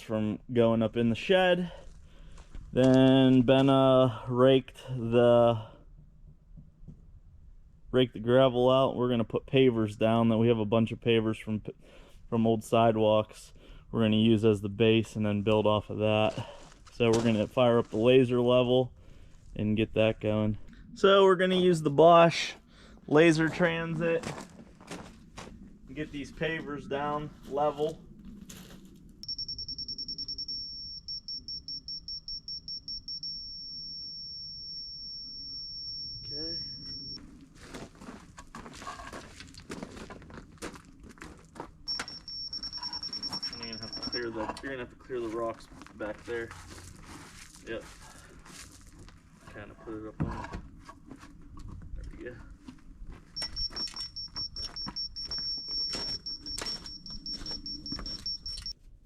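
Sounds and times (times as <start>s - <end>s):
laser level beeping: 29.2s - 37.2s, 41.9s - 44.4s, 53.4s - 58.8s
continuous electronic tone: 29.2s - 37.4s, 41.8s - 44.9s, 53.3s - 58.8s.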